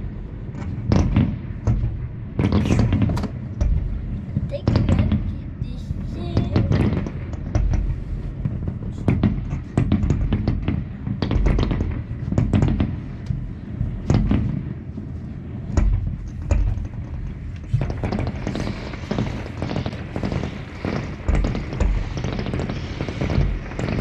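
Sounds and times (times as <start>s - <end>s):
fireworks shells bursting: 15.7s - 24.0s.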